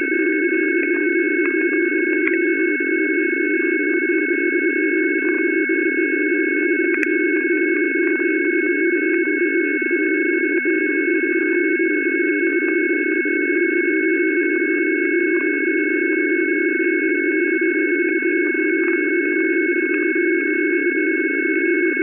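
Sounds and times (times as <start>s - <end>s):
radio static noise: 18.3s - 20.9s.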